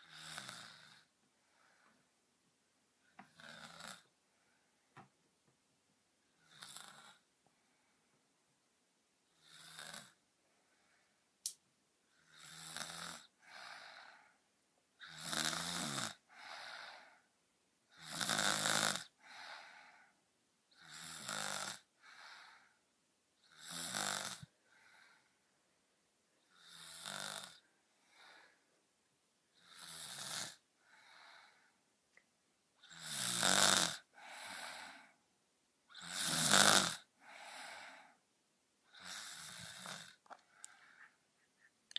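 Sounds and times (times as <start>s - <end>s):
girl snoring: 0.0s - 1.1s, 3.2s - 4.1s, 6.4s - 7.3s, 9.3s - 10.2s, 12.2s - 14.4s, 15.0s - 17.2s, 17.9s - 20.0s, 20.7s - 22.8s, 23.4s - 25.2s, 26.5s - 28.6s, 29.6s - 31.6s, 32.8s - 35.2s, 35.9s - 38.1s, 38.9s - 40.3s.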